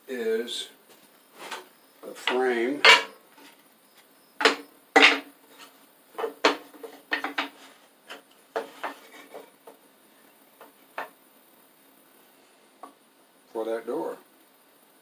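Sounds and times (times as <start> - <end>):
wood rubbing on wood: 1.3 - 3.6, 4.4 - 9.8
wooden pieces knocking together: 1.4 - 3.6, 4.4 - 9.8.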